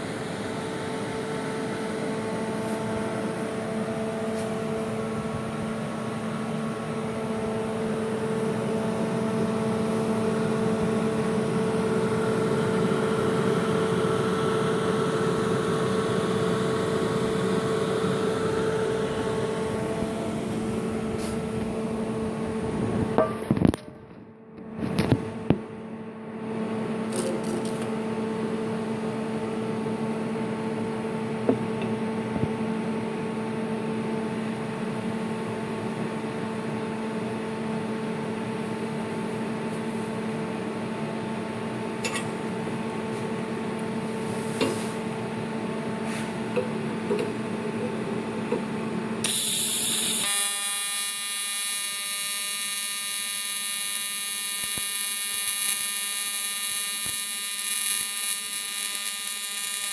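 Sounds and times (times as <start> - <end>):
welding arc buzzing: 49.2 - 59.9.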